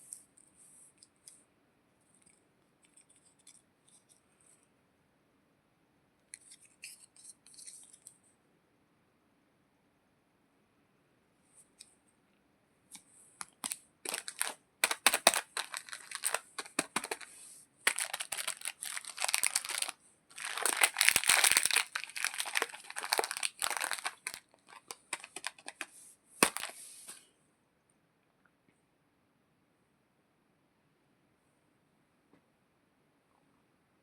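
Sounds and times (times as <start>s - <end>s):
candy wrapper crinkling and tearing: 13.4s - 26.8s.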